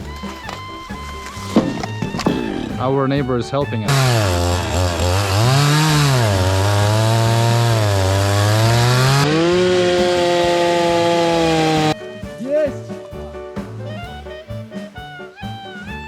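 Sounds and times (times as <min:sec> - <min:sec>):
engine revving under load: 0:03.9 - 0:12.0.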